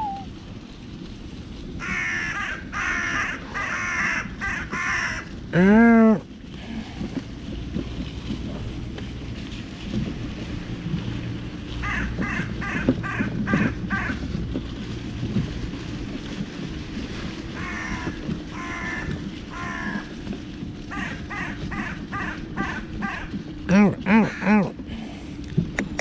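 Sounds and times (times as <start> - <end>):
steady low rumble: 0.0 - 26.0
crows cawing: 1.8 - 5.8, 11.8 - 14.2, 17.6 - 20.2, 20.9 - 23.4, 24.1 - 24.7.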